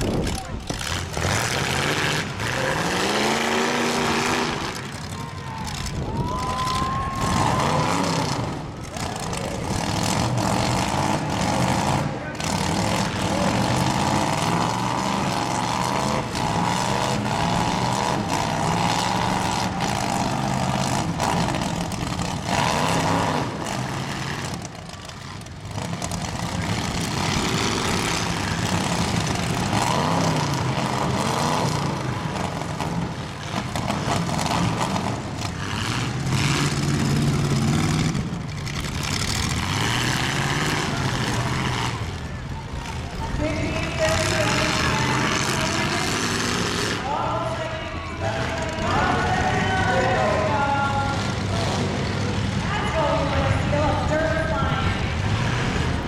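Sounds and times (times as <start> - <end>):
car engines revving: 0.0 - 56.0.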